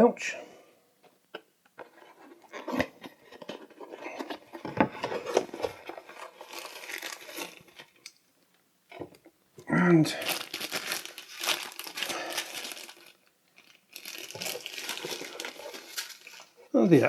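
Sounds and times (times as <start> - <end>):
cardboard packaging rustling: 1.8 - 8.1, 10.2 - 16.7.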